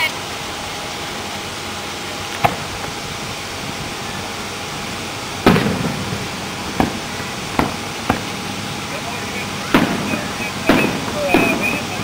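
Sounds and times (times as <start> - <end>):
outdoor background noise: 0.0 - 12.0
sharp bangs: 5.4 - 8.5, 9.4 - 12.0.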